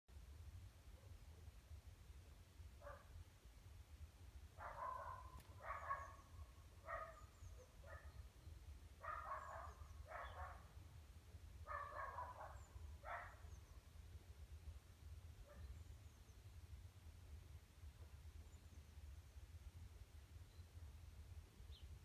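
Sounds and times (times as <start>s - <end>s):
dog barking faintly: 2.8s - 3.2s, 4.6s - 8.2s, 9.0s - 10.8s, 11.7s - 13.5s.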